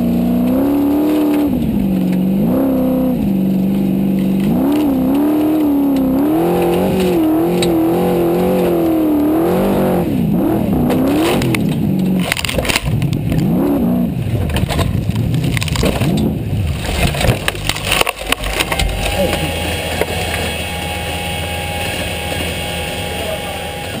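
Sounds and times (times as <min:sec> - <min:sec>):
buggy engine revving: 0:00.0 - 0:24.0
engine hum with thin whine: 0:00.0 - 0:24.0
clattering knocks over rough ground: 0:14.3 - 0:20.4.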